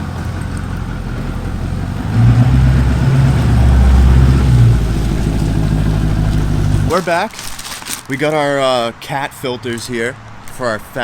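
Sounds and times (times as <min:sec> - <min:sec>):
diesel engine running: 0:00.0 - 0:07.0.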